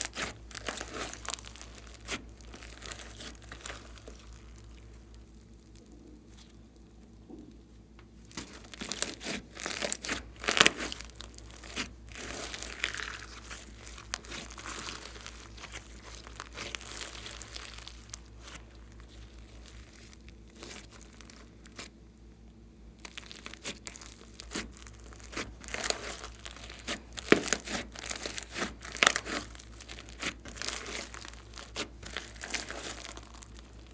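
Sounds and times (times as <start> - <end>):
slime popping and squelching: 0.0 - 6.5, 8.2 - 21.9, 23.0 - 33.9.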